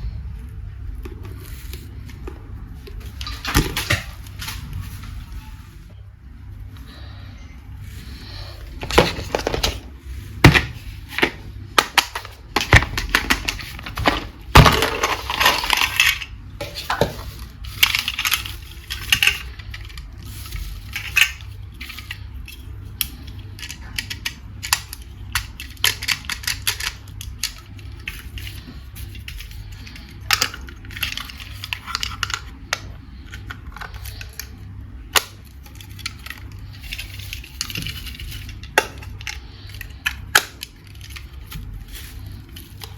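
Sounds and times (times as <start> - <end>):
plastic toys clicking and tapping: 20.8 - 41.7.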